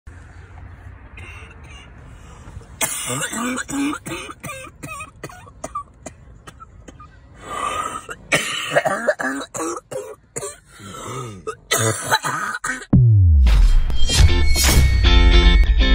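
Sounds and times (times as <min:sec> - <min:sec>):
person coughing: 0:02.8 - 0:07.1, 0:08.0 - 0:12.9.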